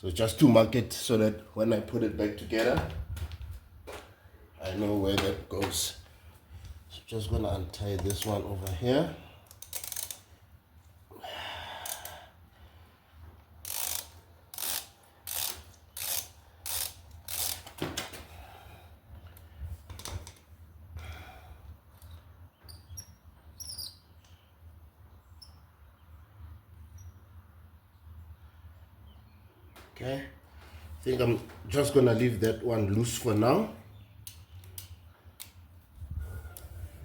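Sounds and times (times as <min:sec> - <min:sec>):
ratchet wrench clicking: 0:09.4 - 0:10.3, 0:11.8 - 0:12.1, 0:13.6 - 0:17.7.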